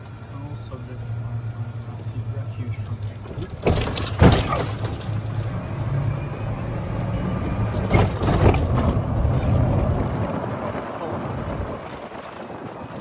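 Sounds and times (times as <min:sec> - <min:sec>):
golf cart motor hum: 0:00.0 - 0:13.0
knocks and rattles: 0:02.7 - 0:13.0.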